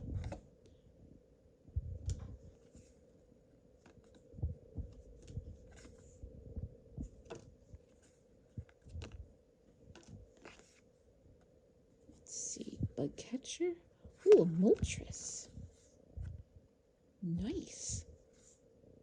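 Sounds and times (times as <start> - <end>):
faint steady hum: 0.0 - 19.0
trading cards being handled: 3.7 - 6.2, 7.0 - 11.5.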